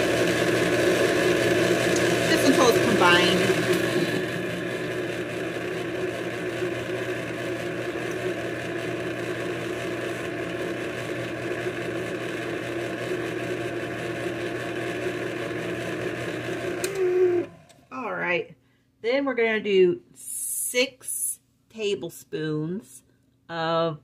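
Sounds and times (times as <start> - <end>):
electric kitchen mixer running: 0.0 - 17.9.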